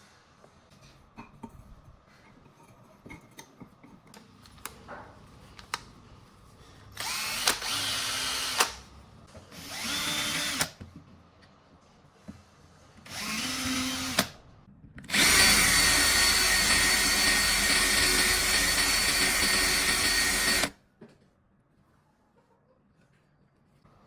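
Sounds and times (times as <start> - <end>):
electric drill whining: 7.0 - 8.8, 9.6 - 10.8, 13.1 - 14.4, 15.1 - 20.8.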